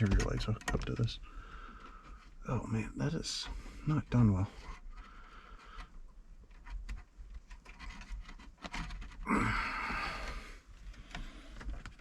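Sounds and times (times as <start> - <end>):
hands handling plastic parts: 4.6 - 9.4, 10.2 - 12.0
person sighing: 9.2 - 10.6.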